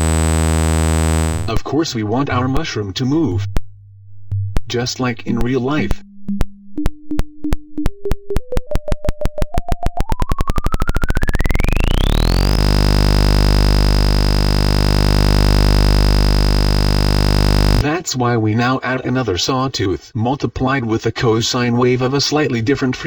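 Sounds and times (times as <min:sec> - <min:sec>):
steady buzz with high whine: 0:00.0 - 0:01.6, 0:11.6 - 0:17.8
synthesized clicks and rising tone: 0:03.4 - 0:17.8.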